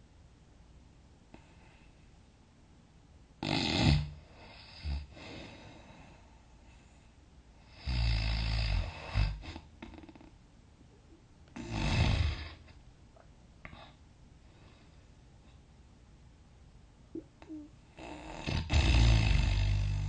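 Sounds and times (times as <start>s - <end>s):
person snoring: 11.6s - 12.7s, 17.4s - 20.0s.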